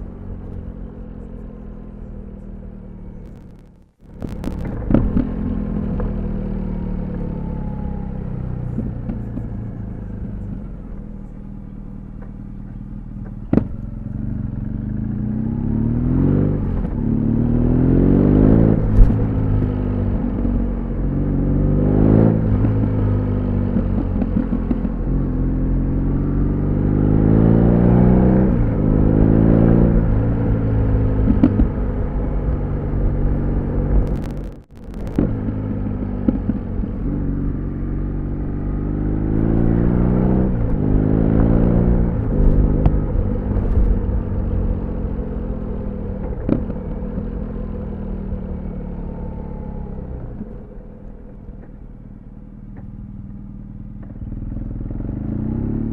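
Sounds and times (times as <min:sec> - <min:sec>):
motorcycle engine revving: 0:00.0 - 0:55.9
exhaust pops: 0:03.2 - 0:06.2, 0:13.2 - 0:14.2, 0:18.6 - 0:20.6, 0:31.2 - 0:32.2, 0:33.0 - 0:37.1, 0:46.1 - 0:47.2.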